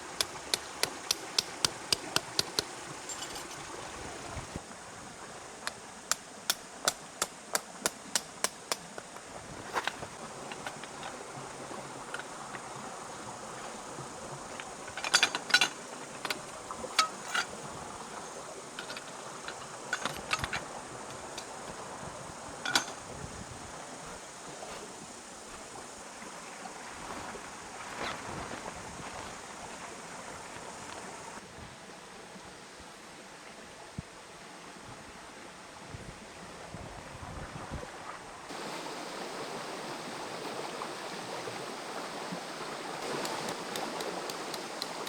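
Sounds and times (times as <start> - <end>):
forest stream rushing: 0.0 - 45.0
sharp knocks and clicks: 0.2 - 3.5.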